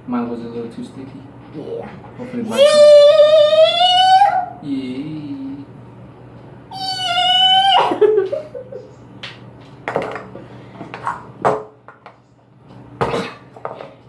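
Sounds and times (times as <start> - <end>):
child squealing: 2.4 - 4.6, 6.7 - 8.2.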